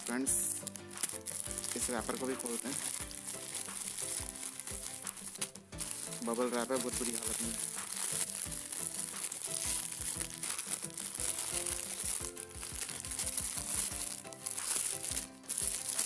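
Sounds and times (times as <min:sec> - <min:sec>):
background music with a beat: 0:00.0 - 0:16.0
bubble wrap crinkling: 0:00.0 - 0:16.0.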